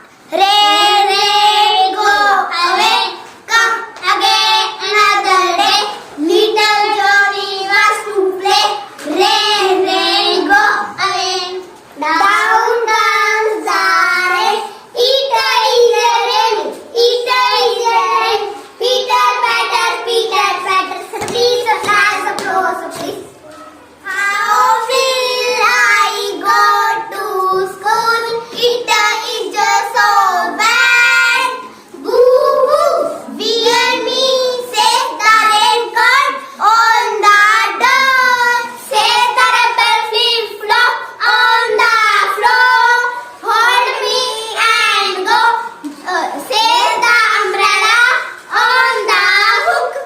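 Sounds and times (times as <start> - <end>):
child singing: 0.3 - 23.4, 24.0 - 50.0.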